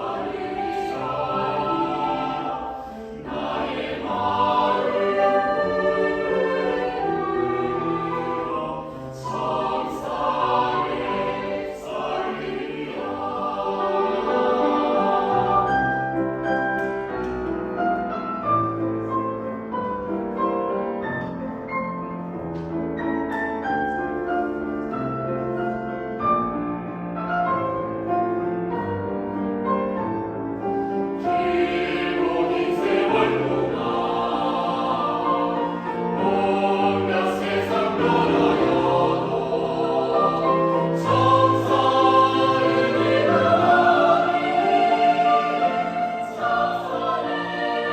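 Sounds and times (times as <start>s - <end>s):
choir singing: 0.0s - 17.4s, 30.6s - 47.9s.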